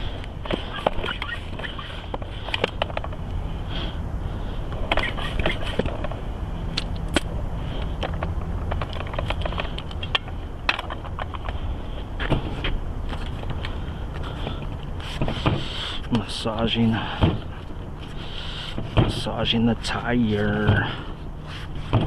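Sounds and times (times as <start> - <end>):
low background rumble: 0.0 - 22.0
hands fitting tire on rim: 0.2 - 3.3, 4.7 - 11.6.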